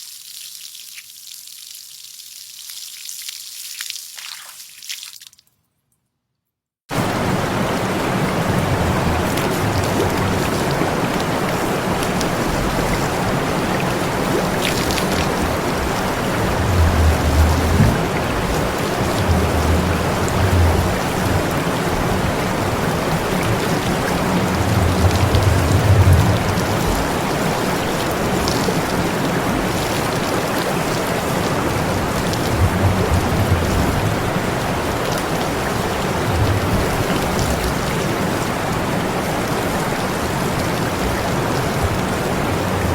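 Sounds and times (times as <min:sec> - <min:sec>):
low rumbling: 0:07.0 - 0:29.8, 0:31.6 - 0:34.9, 0:41.0 - 0:42.9
water spraying hiss: 0:07.0 - 0:31.6.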